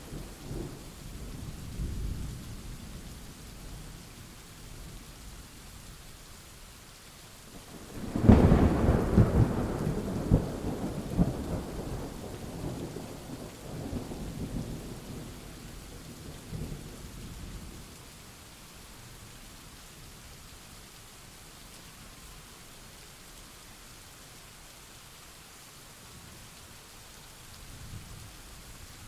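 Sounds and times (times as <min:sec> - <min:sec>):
steady rain: 0:00.0 - 0:29.0
thunder cracking and rumbling: 0:07.9 - 0:15.4.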